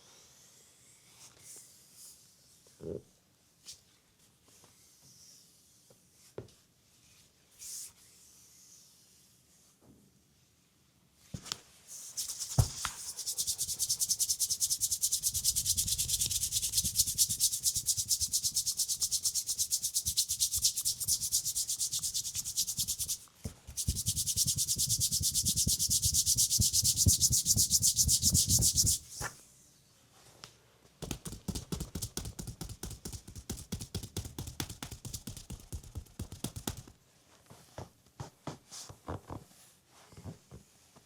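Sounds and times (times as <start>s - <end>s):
hands rubbing over skin: 12.1s - 29.3s, 31.0s - 36.9s
sharp tap: 31.0s - 36.9s.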